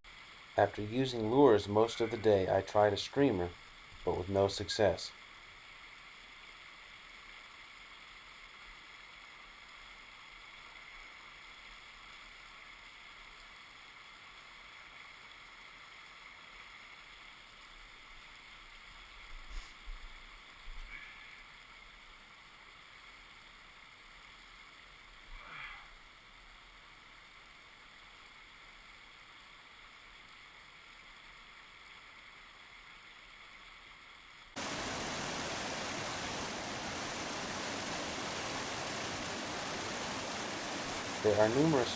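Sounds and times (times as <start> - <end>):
creek water rushing: 0.1 - 19.3, 34.5 - 41.9.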